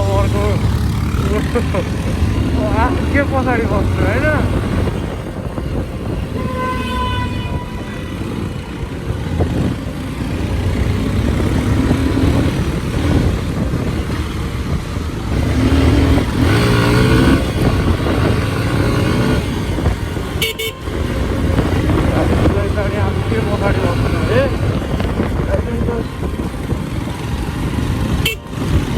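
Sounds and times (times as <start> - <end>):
motorcycle engine and wind rumble: 0.0 - 28.9
passing engine: 0.0 - 28.9
traffic: 0.0 - 28.9
vehicle horn: 6.0 - 9.7, 20.2 - 22.4, 28.0 - 28.9.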